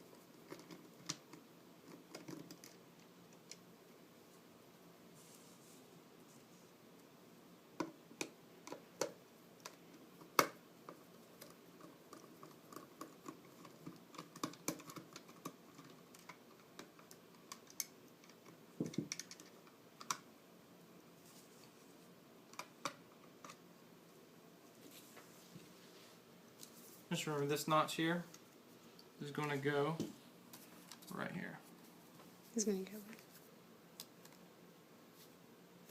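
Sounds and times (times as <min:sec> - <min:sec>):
plastic parts clicking and knocking: 0:00.4 - 0:03.6, 0:07.8 - 0:20.2.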